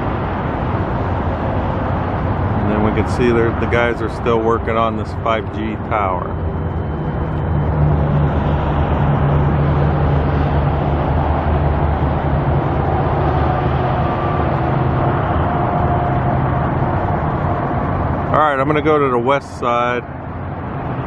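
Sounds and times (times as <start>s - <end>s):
road traffic: 0.0s - 21.0s.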